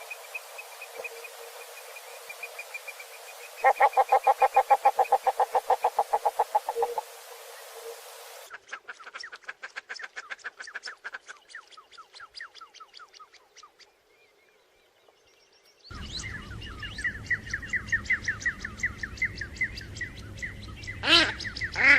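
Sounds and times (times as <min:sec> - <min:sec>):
low hum: 0:15.9 - 0:21.8.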